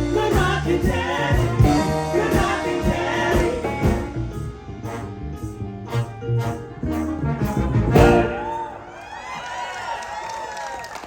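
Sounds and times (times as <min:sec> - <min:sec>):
drum hits: 0:00.0 - 0:04.3
upright bass: 0:00.0 - 0:08.7
trombone horn section: 0:00.0 - 0:08.8
piano: 0:00.0 - 0:09.2.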